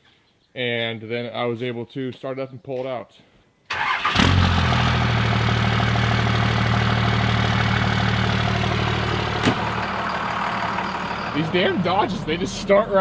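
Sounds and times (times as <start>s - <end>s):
diesel engine idling: 3.8s - 13.0s.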